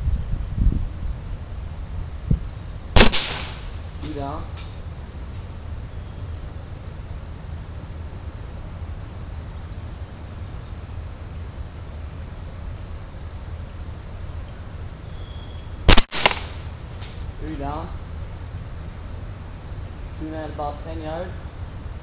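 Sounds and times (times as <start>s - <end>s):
low outdoor rumble: 0.0s - 22.0s
faint high chirps: 14.4s - 15.8s.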